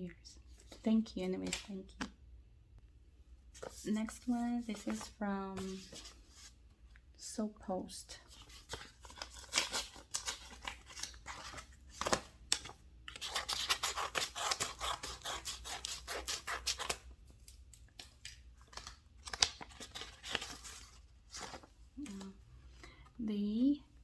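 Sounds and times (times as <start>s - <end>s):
package being cut and torn open: 9.1s - 17.0s
packaging crackling and rustling: 18.0s - 22.4s.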